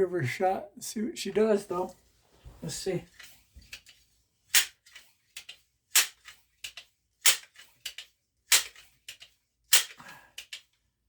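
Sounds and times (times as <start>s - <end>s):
air gun snapping: 4.5s - 4.8s, 5.9s - 10.6s.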